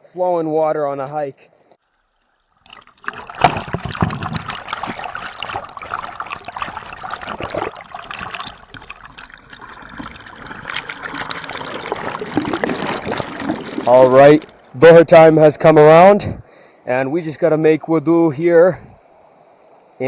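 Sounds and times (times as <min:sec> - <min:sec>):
creek water babbling over rocks: 0:01.9 - 0:15.0.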